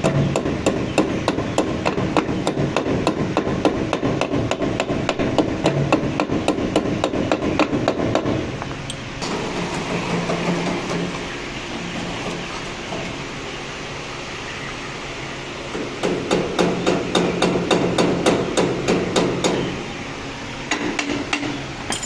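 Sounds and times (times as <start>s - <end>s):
rapid hammering knocks: 0.0s - 8.4s, 15.7s - 19.7s.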